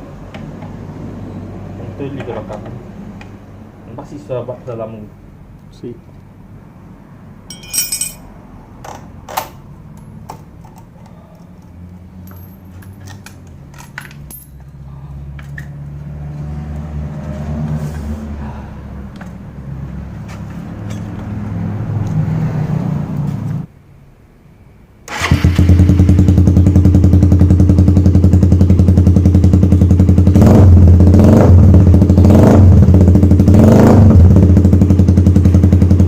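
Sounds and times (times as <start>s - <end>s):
metallic clinks and jangles: 7.5s - 8.3s, 13.7s - 14.8s
motorcycle engine idling: 25.1s - 31.1s, 34.3s - 36.0s.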